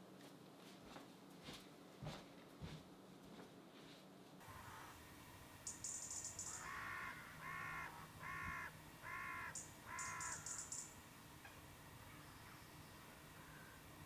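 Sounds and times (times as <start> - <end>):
crow cawing: 4.5 - 5.0, 5.7 - 10.9, 12.1 - 14.0.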